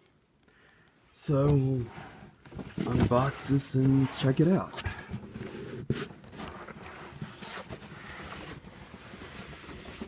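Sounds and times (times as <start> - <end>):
cardboard scraping and rustling: 1.3 - 10.0.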